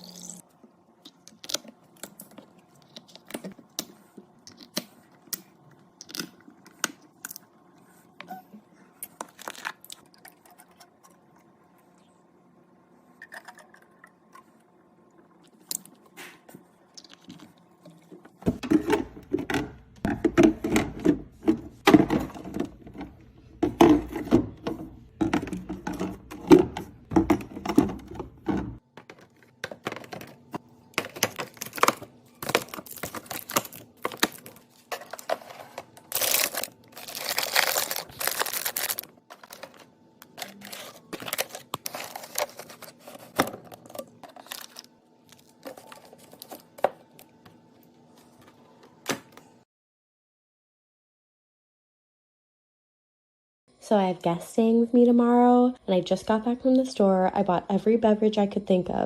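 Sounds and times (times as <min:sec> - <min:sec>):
cans and containers knocking: 0:23.6 - 0:28.8
packaging tearing and crinkling: 0:31.4 - 0:35.4, 0:36.0 - 0:46.6.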